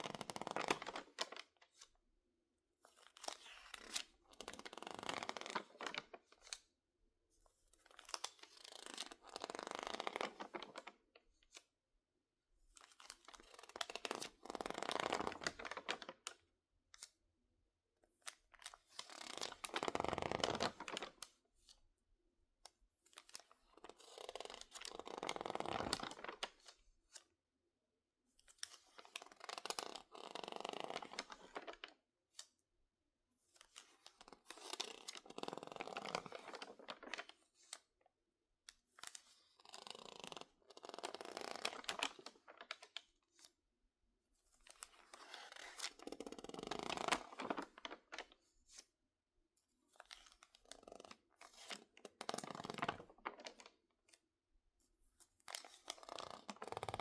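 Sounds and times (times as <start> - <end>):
magazine pages crackling rustle: 33.7 - 37.8, 44.7 - 48.8.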